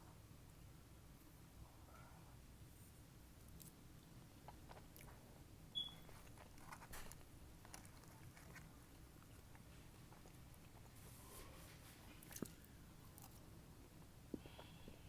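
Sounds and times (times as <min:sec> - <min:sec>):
chewing fries: 0:03.4 - 0:15.0.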